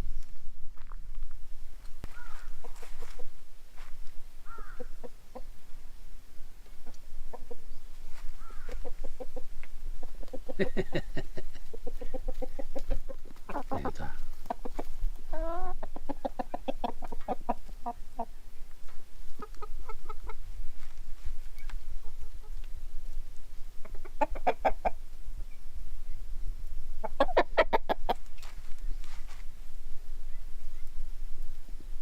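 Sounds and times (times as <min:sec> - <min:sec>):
chickens clucking: 0:02.1 - 0:03.4, 0:04.4 - 0:22.7, 0:23.6 - 0:25.6, 0:27.0 - 0:28.5.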